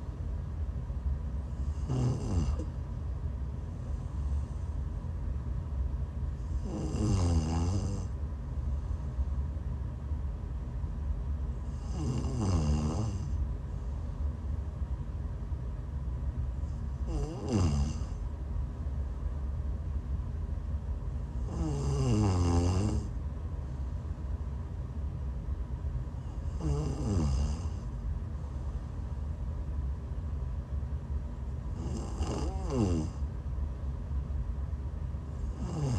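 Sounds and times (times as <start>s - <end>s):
steady low rumble: 0.0s - 12.3s, 12.9s - 35.9s
woman snoring: 1.6s - 2.8s, 6.4s - 8.2s, 11.6s - 13.4s, 17.0s - 18.2s, 21.4s - 23.1s, 26.2s - 27.9s, 31.7s - 33.2s, 35.4s - 35.9s.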